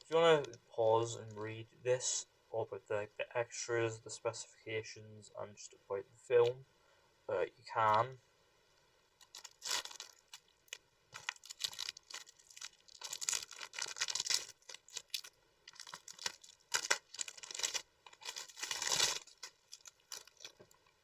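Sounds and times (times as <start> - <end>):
cellophane crinkling and tearing: 9.2 - 21.0.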